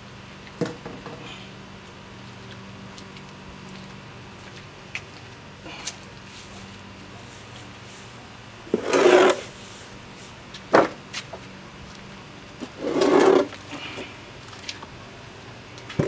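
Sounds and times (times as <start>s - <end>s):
faint steady hum: 0.0s - 16.0s
rubbing scrapes: 8.7s - 9.9s, 12.8s - 13.5s.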